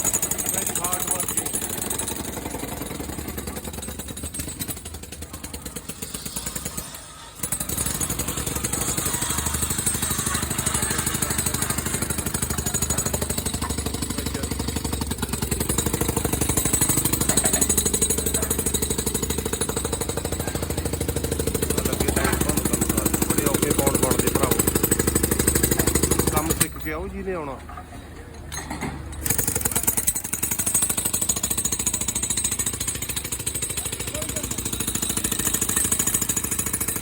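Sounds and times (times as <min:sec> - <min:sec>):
jackhammer hammering: 0:00.0 - 0:27.5, 0:28.5 - 0:37.0.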